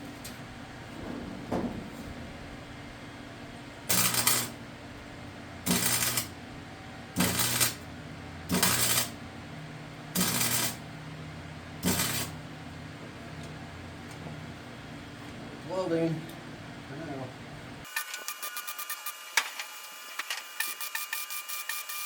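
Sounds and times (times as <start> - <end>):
wire-feed hum: 0.0 - 6.6
welder crackling bursts: 3.9 - 4.6, 5.7 - 6.3, 7.2 - 7.8, 8.5 - 9.2, 10.2 - 10.8, 11.8 - 12.4.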